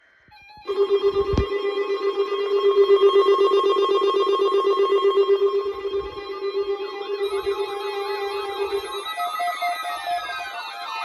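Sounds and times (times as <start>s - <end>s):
pulsing electronic alert buzz: 0.7s - 9.4s.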